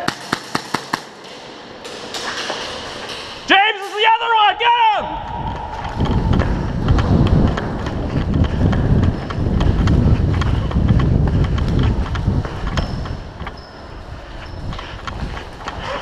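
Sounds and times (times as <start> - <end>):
running footsteps: 5.0 - 16.0
rumble on microphone: 5.2 - 13.5.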